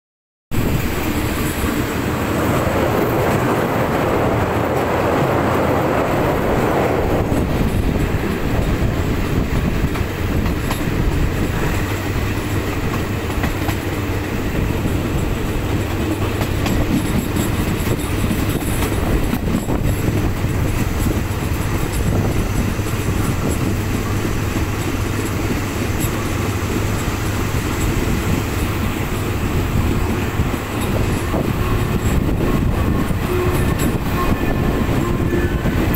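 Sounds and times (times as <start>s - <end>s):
train rumbling on rails: 0.5s - 35.9s.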